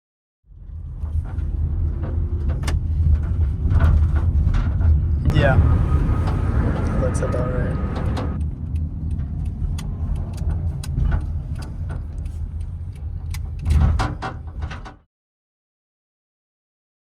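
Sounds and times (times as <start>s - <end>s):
car engine and road noise: 0.5s - 15.0s
light rattles and clicks: 0.7s - 5.2s, 7.9s - 15.0s.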